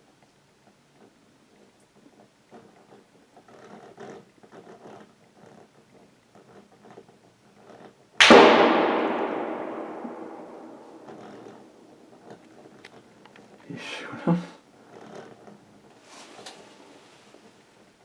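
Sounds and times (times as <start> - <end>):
rifle shot with echo: 8.2 - 11.8.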